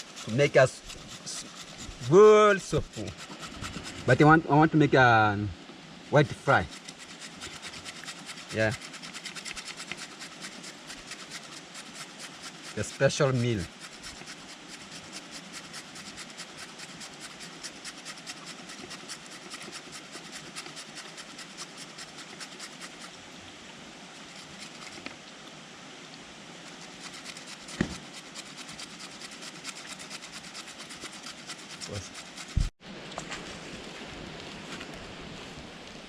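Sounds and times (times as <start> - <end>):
carrot being grated: 0.0 - 4.2, 6.2 - 23.2, 24.3 - 25.0, 26.6 - 32.7.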